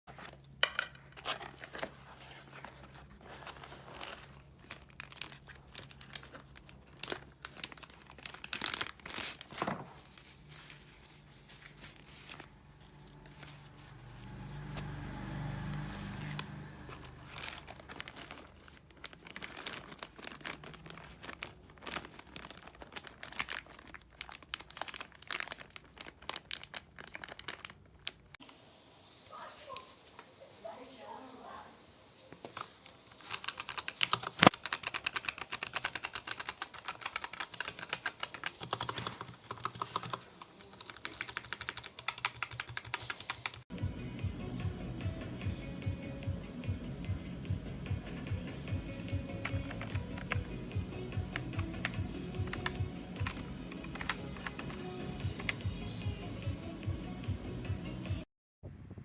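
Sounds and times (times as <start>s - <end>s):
plastic packaging crinkling and tearing: 0.1s - 14.7s, 16.0s - 28.4s, 32.4s - 34.6s.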